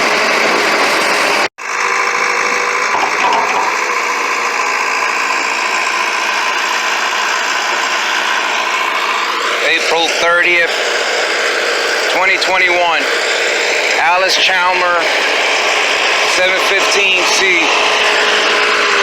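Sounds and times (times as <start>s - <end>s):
backhoe engine running: 0.0s - 19.0s.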